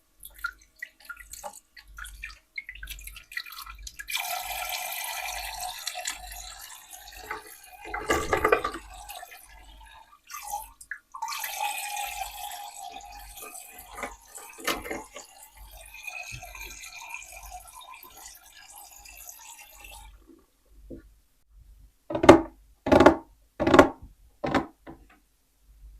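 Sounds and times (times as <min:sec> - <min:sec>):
water trickling from toy faucet: 0:00.1 - 0:20.4
short knocks: 0:22.1 - 0:25.1.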